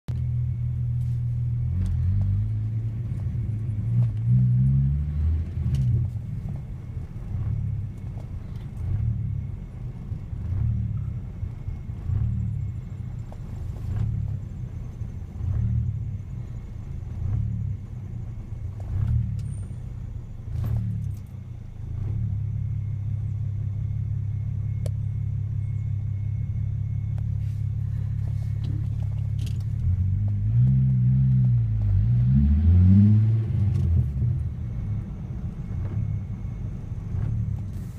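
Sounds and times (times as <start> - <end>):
car engine idling roughly: 6.0 - 30.0.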